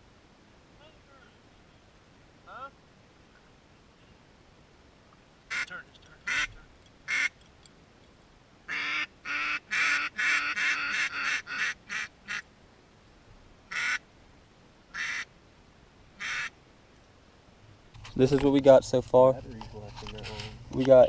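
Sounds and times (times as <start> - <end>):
duck quacking: 5.5 - 7.4, 8.7 - 12.4, 13.7 - 14.0, 14.9 - 15.3, 16.2 - 16.5.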